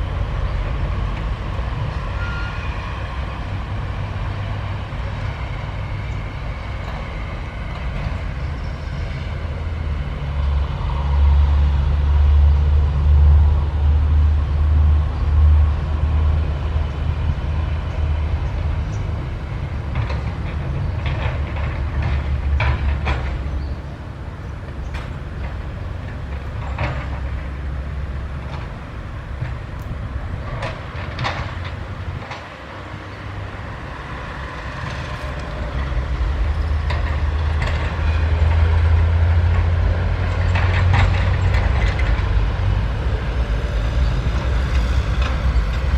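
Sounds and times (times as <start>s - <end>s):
excavator diesel engine running: 0.0s - 45.9s
metallic clanks and knocks: 19.9s - 23.8s, 30.4s - 32.6s.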